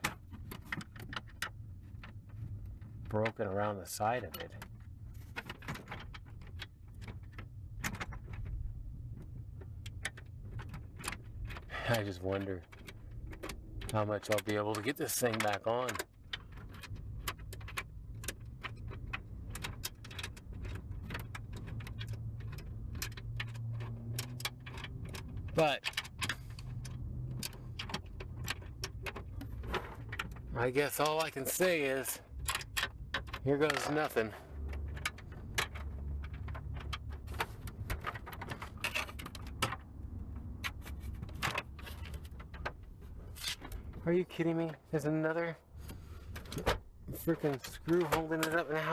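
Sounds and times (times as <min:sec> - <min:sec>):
hand tools clicking on plastic trim: 0:05.4 - 0:44.0.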